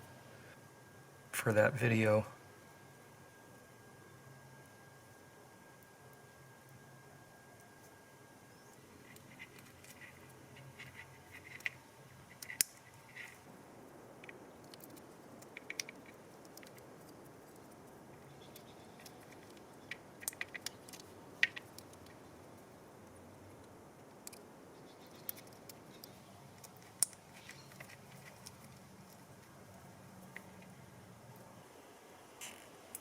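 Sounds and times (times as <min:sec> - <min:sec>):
faint low hum: 0:00.0 - 0:33.0
small tools clicking: 0:14.2 - 0:16.8.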